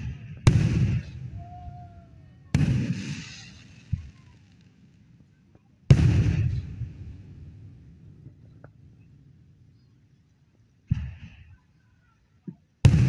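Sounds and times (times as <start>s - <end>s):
firework shells bursting: 0.5s - 9.4s.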